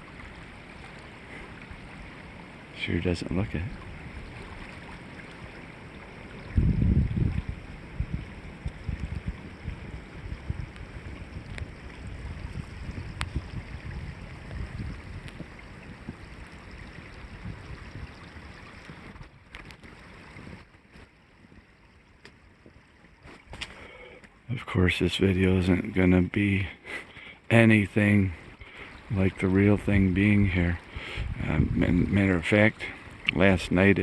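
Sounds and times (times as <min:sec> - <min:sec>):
creek rushing: 0:00.0 - 0:34.0
wind buffeting microphone: 0:01.6 - 0:20.7, 0:29.0 - 0:34.0.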